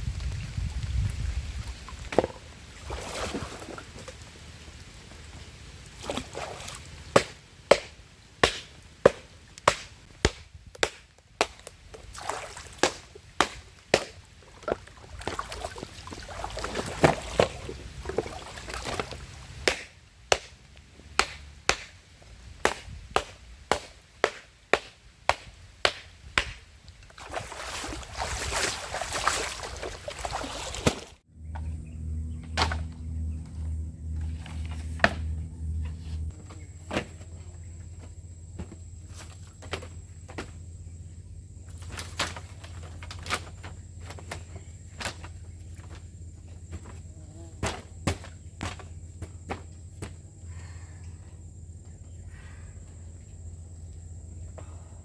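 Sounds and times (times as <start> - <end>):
blade chopping into wood: 7.2 - 11.8, 12.8 - 14.2, 19.6 - 20.6, 21.2 - 22.0, 22.6 - 26.6
low pulsing hum: 27.2 - 55.0.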